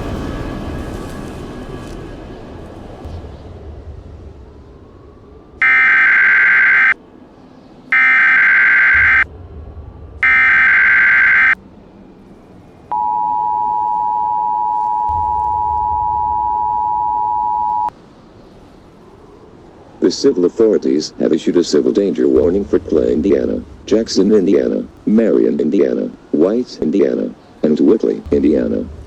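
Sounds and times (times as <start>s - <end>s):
two-tone attention signal: 5.6s - 7.0s, 7.9s - 9.3s, 10.2s - 11.6s, 12.9s - 17.9s
warbling digital data tones: 5.6s - 7.0s, 7.9s - 9.2s, 10.2s - 11.6s, 12.9s - 17.9s.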